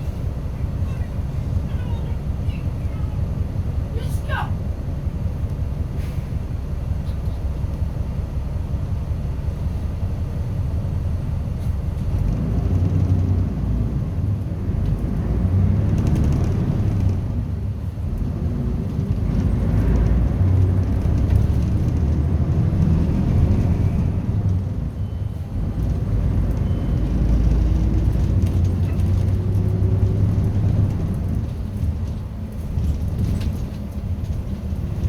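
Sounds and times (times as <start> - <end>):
bus rumble from inside: 0.0 - 35.0.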